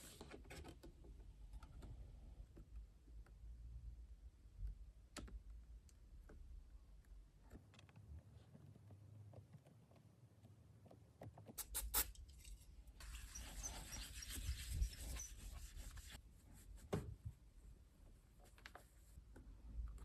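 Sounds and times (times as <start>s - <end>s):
rubbing or scraping: 11.6s - 16.8s.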